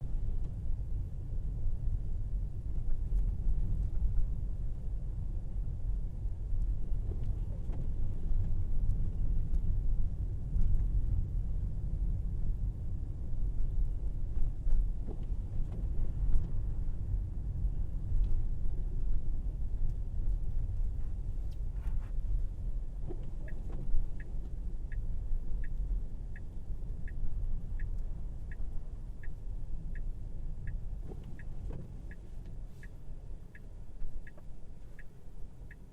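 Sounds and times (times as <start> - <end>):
car tyre rumble on snowy road: 0.0 - 35.9
turn signal ticking: 18.2 - 35.9.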